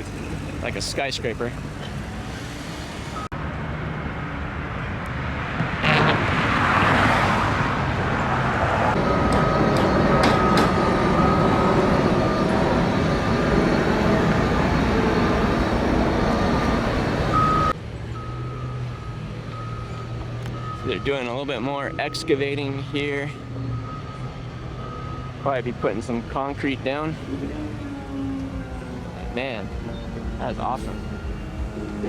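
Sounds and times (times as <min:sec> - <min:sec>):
reversing alarm beeping: 0:03.1 - 0:03.4, 0:09.0 - 0:32.0
truck engine running: 0:07.8 - 0:21.9.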